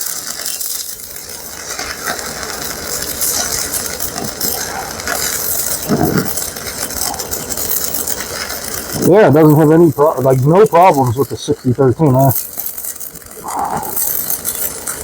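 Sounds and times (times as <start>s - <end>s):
welding arc crackle and hiss: 0.0s - 15.0s.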